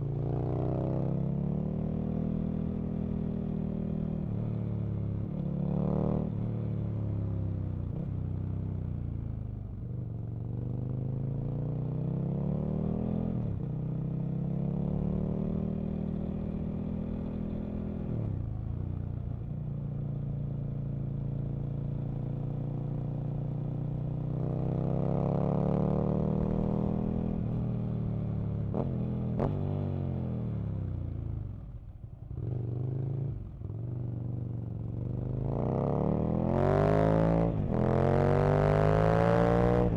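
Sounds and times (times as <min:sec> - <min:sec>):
motorcycle engine accelerating: 0:14.4 - 0:39.9.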